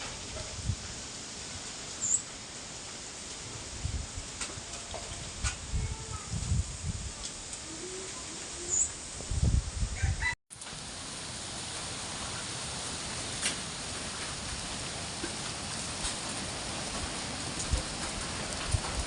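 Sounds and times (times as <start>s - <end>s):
wind buffeting microphone: 0.0s - 1.0s, 3.7s - 7.6s, 8.8s - 10.4s, 16.0s - 19.0s
wind rushing: 5.2s - 7.2s, 9.0s - 10.4s.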